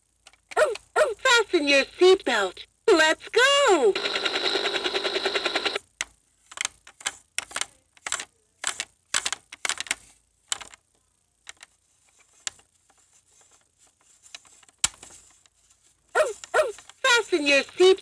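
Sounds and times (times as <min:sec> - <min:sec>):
electronic buzzing rotor sound: 0:03.9 - 0:05.8
plastic toy clicks and knocks: 0:04.9 - 0:10.8.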